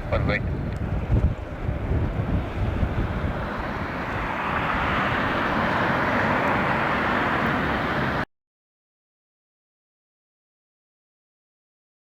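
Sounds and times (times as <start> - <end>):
jet engines roaring: 0.0 - 8.2
wind buffeting microphone: 0.0 - 8.2.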